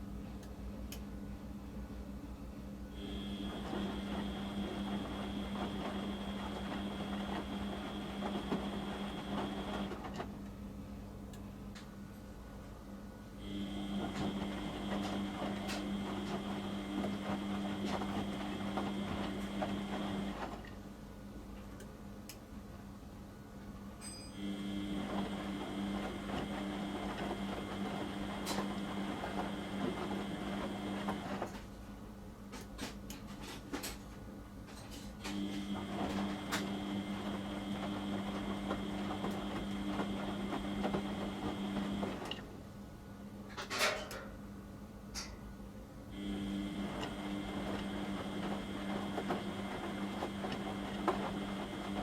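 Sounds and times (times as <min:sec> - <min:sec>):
washing machine drum motor humming: 0:03.0 - 0:10.4, 0:13.4 - 0:20.8, 0:24.4 - 0:31.7, 0:35.4 - 0:42.8, 0:46.2 - 0:52.0.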